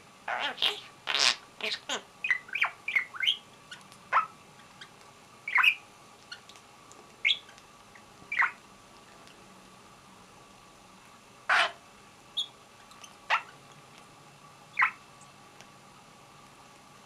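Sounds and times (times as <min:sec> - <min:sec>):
budgerigar chirping: 0:00.3 - 0:04.9, 0:05.5 - 0:06.4, 0:07.2 - 0:07.5, 0:08.3 - 0:08.6, 0:11.5 - 0:11.8, 0:13.3 - 0:13.6, 0:14.8 - 0:15.0.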